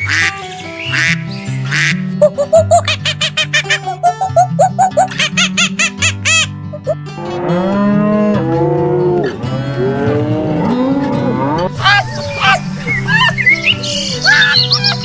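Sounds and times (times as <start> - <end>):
duck quacks: 0.0 - 7.0
cattle mooing: 7.1 - 12.6.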